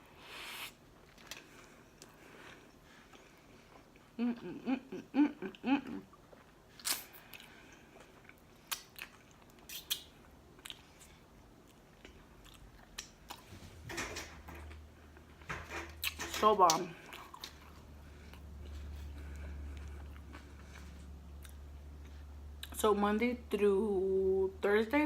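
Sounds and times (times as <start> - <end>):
person humming: 4.2 - 6.0
chewing with mouth clicks: 5.5 - 13.5, 17.0 - 22.8.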